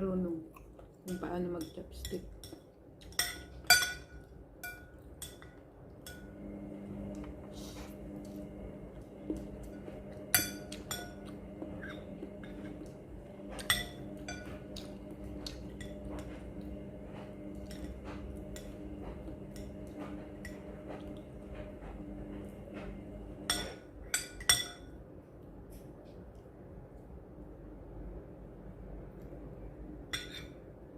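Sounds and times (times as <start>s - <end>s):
steady low hum: 0.0s - 30.9s
utensils clinking against bowl: 1.0s - 6.5s, 9.3s - 16.7s, 17.6s - 21.2s, 23.5s - 24.9s, 30.1s - 30.6s.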